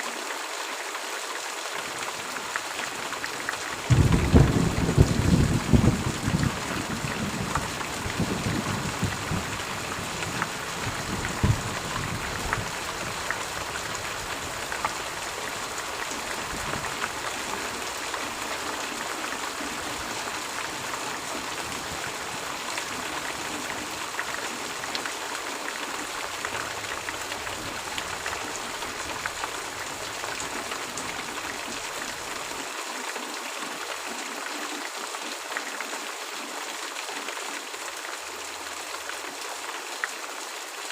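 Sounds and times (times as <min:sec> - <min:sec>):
steady rain hissing: 0:00.0 - 0:40.9
low thunder rumble: 0:03.9 - 0:18.0.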